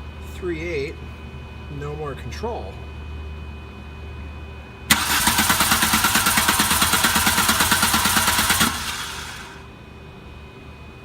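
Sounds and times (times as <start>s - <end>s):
engine cranking on starter: 4.9s - 9.7s.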